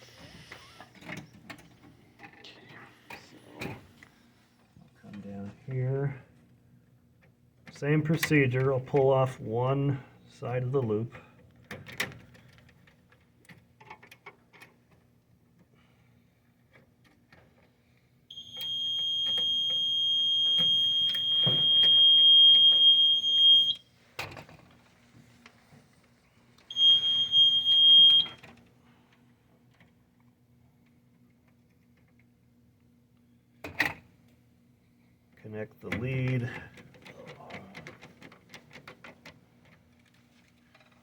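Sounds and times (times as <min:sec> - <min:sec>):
alarm panel high beep: 0:18.3 - 0:23.8, 0:26.7 - 0:28.4.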